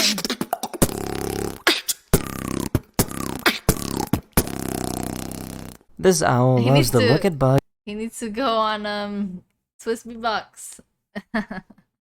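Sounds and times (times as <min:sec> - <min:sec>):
person beatboxing: 0:00.0 - 0:05.8.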